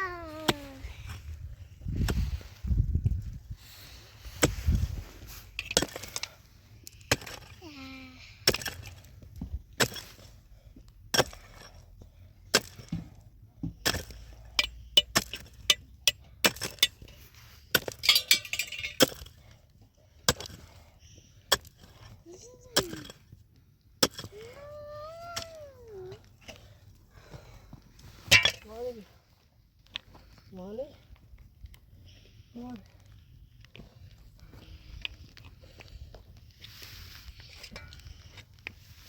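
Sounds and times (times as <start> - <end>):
hard objects knocking and clinking: 17.9 - 19.1.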